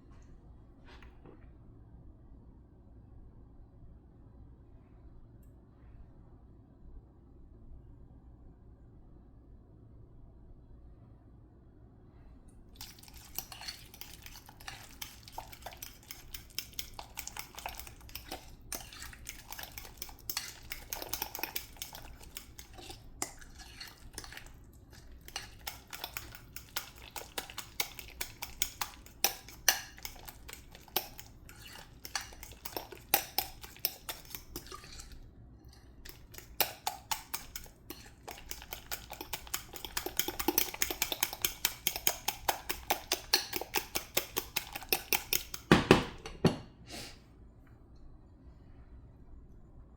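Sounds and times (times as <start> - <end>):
whisk scraping mixing bowl: 12.8 - 35.2, 35.8 - 45.7.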